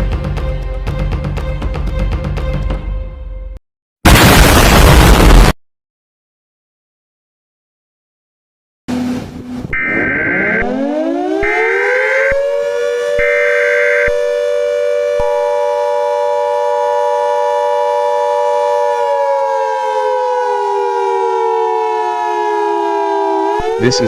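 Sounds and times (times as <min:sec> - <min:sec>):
higher siren tone: 0:08.9 - 0:24.0
warning siren wailing: 0:08.9 - 0:24.0.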